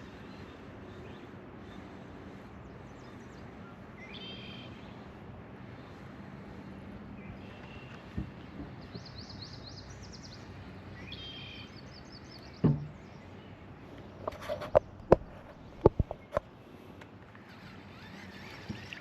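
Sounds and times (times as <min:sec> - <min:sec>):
small bird singing: 0:02.6 - 0:05.0, 0:08.8 - 0:13.6
loud dull thump: 0:12.6 - 0:13.0
sharp knocks and clicks: 0:12.6 - 0:13.0, 0:14.2 - 0:16.5.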